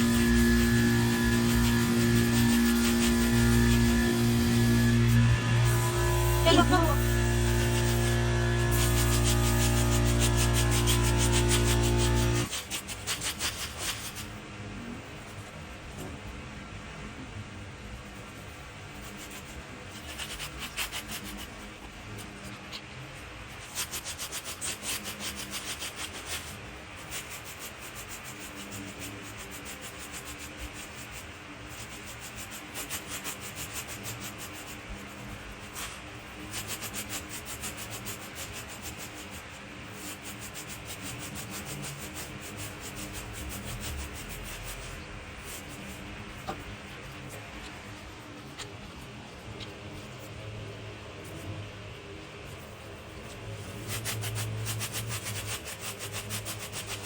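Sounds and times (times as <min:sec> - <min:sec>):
dry leaves being raked: 0:00.0 - 0:14.2, 0:53.6 - 0:57.0.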